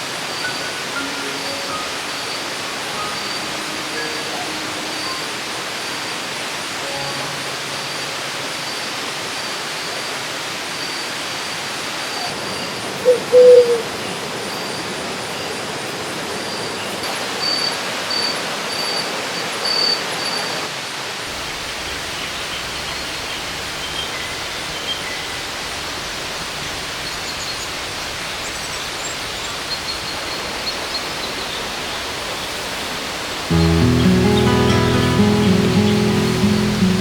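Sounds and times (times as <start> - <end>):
thin high call: 33.5 - 37.0.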